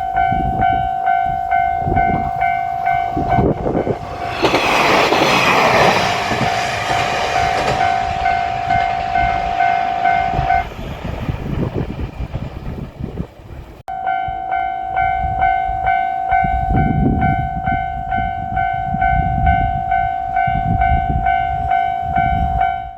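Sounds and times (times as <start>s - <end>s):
level crossing bell ringing: 0.0s - 4.6s, 6.0s - 10.7s, 13.9s - 22.9s
low rumble: 0.1s - 13.9s.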